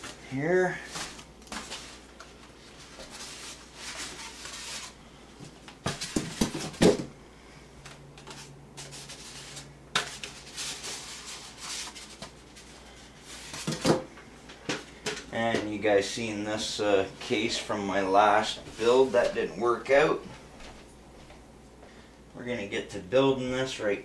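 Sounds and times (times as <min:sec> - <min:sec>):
cardboard rustling and sliding: 0:00.8 - 0:06.8.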